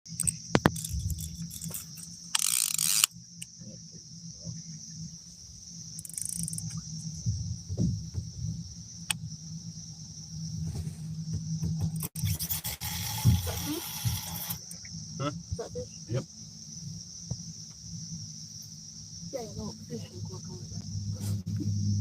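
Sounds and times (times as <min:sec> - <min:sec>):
sharp clicks: 0:00.1 - 0:03.5
insect chorus drone: 0:00.1 - 0:22.0
low rumble: 0:03.5 - 0:12.2, 0:19.2 - 0:22.0
loud hiss-like burst: 0:12.1 - 0:14.8.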